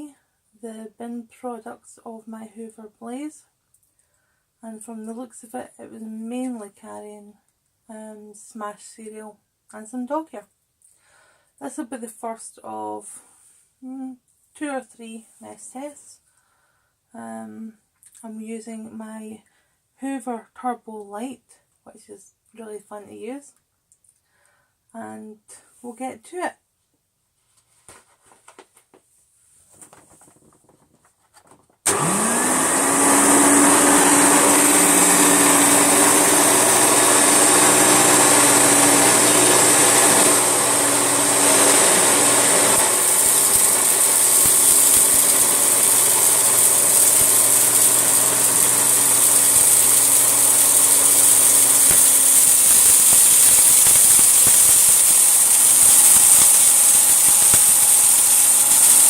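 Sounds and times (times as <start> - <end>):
faint handling sounds: 27.4 - 31.8
vacuum cleaner motor whining: 31.9 - 59.0.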